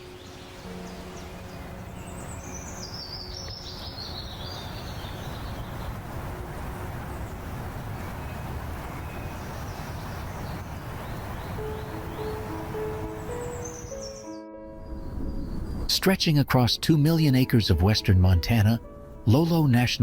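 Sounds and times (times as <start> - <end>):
low outdoor background noise: 0.0 - 13.7
songbird singing: 0.0 - 20.0.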